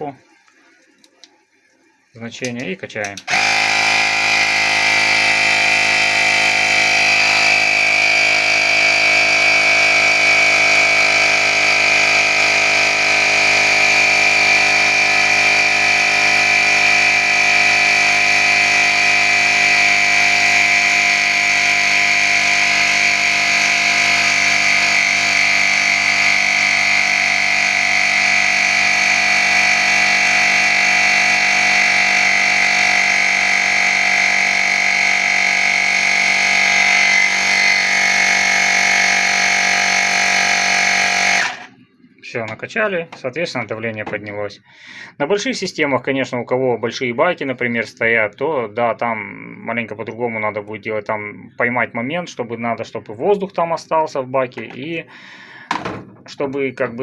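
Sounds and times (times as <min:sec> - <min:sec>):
air compressor running: 0:03.2 - 0:41.8, 0:55.1 - 0:56.1.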